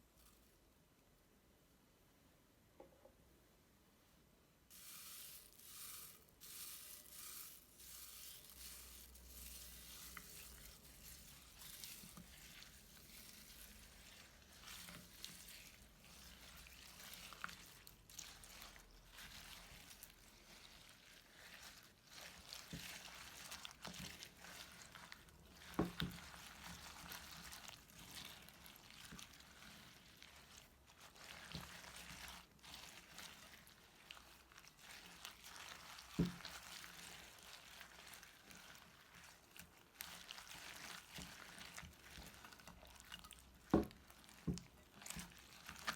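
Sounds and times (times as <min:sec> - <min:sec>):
slime being squished: 0:09.6 - 0:45.9.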